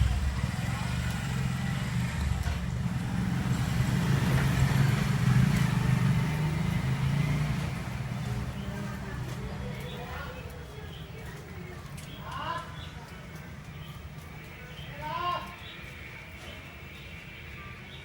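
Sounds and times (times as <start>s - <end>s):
low engine rumble: 0.0s - 18.0s.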